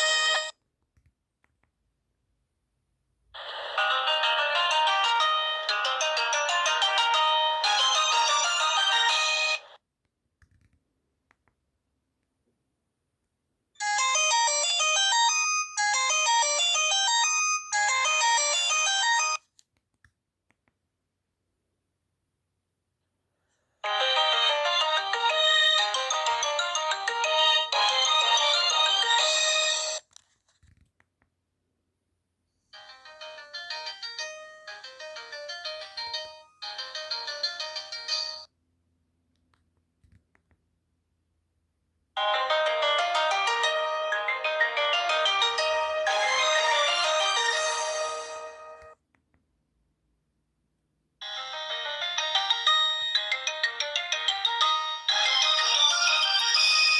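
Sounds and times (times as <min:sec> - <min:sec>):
phone ringtone melody: 0:00.0 - 0:00.5, 0:03.4 - 0:09.8, 0:13.8 - 0:19.4, 0:23.8 - 0:30.0, 0:32.8 - 0:38.5, 0:42.2 - 0:49.0, 0:51.2 - 0:56.9.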